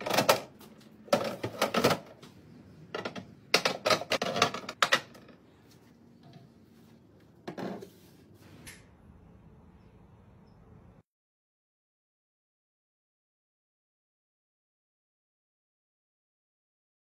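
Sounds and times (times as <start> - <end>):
items clacking and tapping: 0.0 - 5.5.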